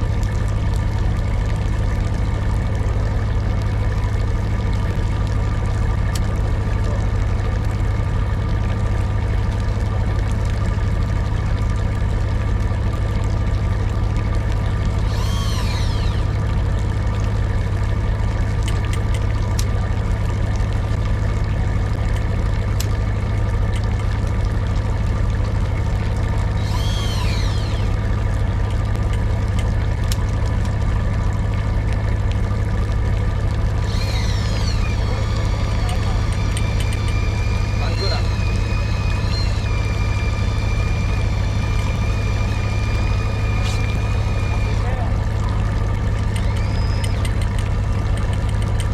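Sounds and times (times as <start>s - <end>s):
boat engine droning: 0.0s - 48.9s
short high squeal: 15.0s - 16.4s, 33.8s - 45.0s, 46.4s - 47.4s.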